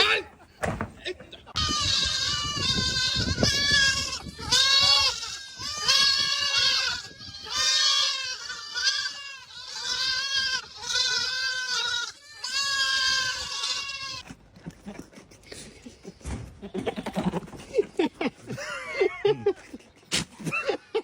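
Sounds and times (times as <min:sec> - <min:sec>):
goat bleating: 0:00.0 - 0:14.3, 0:16.6 - 0:17.6.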